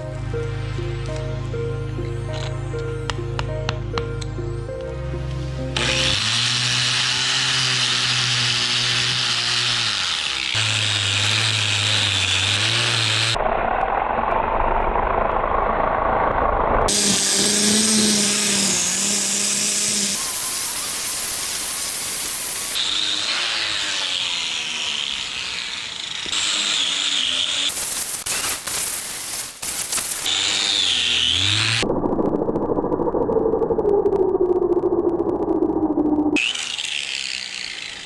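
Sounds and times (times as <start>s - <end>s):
power tools running: 5.3s - 13.4s, 16.9s - 31.8s, 36.4s - 38.0s.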